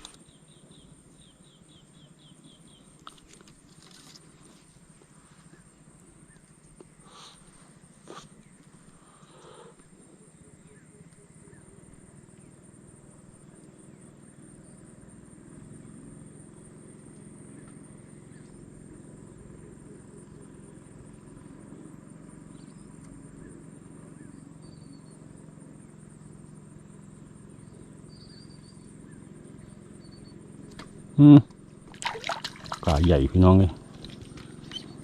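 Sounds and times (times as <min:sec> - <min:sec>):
insects droning: 0:00.0 - 0:35.0
low steady hum: 0:00.0 - 0:35.0
bird chirps: 0:27.6 - 0:30.4, 0:32.8 - 0:35.0.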